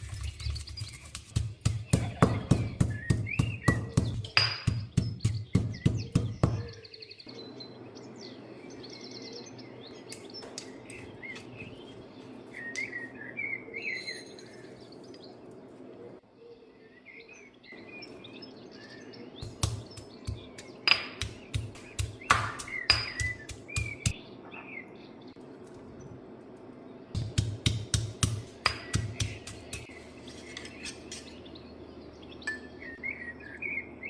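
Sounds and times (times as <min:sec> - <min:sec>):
small birds chirping: 0:00.0 - 0:34.0
steady low hum: 0:17.8 - 0:34.0.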